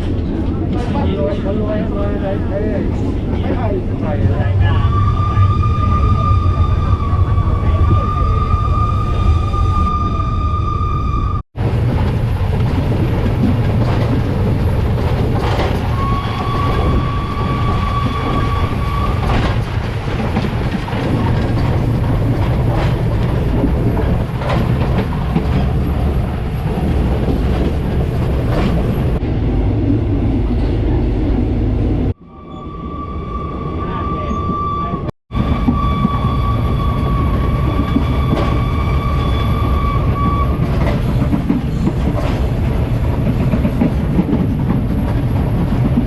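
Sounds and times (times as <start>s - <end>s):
steam train rumbling: 0.0s - 46.0s
wheels clicking over rail joints: 11.8s - 29.2s, 40.0s - 46.0s.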